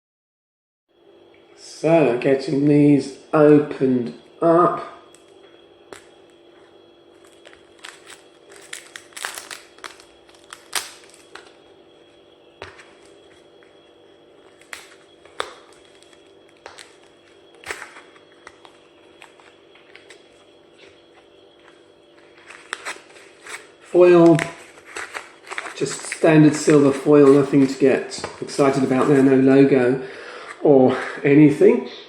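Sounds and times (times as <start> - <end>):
faint steady hum: 0.9 - 32.0
cigarette pack wrapper crinkling: 7.2 - 11.6, 14.5 - 21.0, 24.3 - 29.2.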